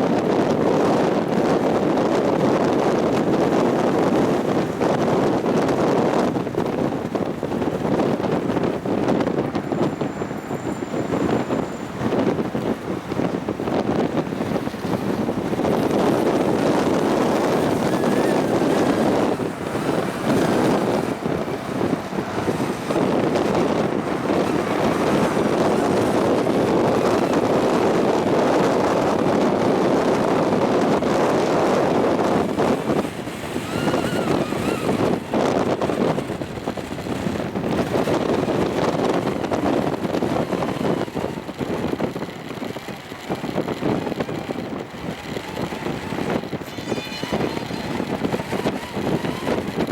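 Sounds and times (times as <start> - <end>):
wind buffeting microphone: 0.0 - 49.9.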